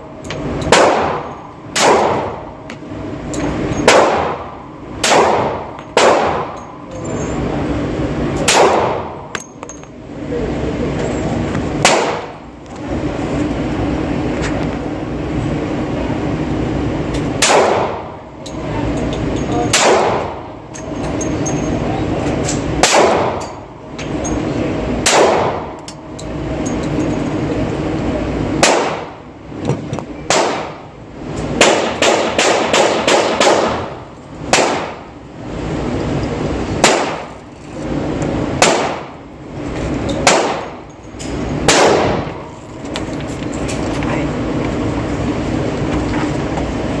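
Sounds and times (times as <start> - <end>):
steady hum: 0.0 - 47.0
pistol shots: 0.7 - 2.4, 3.8 - 6.6, 8.4 - 9.2, 11.8 - 12.4, 17.4 - 18.1, 19.7 - 20.4, 22.8 - 23.4, 25.0 - 25.7, 28.6 - 29.2, 30.3 - 30.8, 31.6 - 35.0, 36.8 - 37.3, 38.6 - 39.1, 40.2 - 40.8, 41.7 - 42.4.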